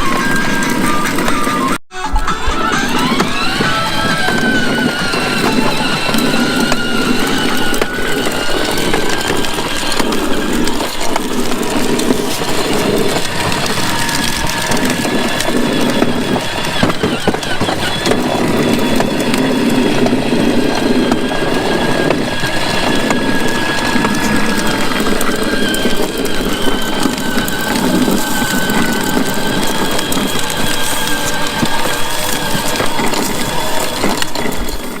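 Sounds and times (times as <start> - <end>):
electric motor and gearbox whine: 0.0 - 1.8, 2.4 - 35.0
plastic wheels rolling on ground: 0.0 - 35.0.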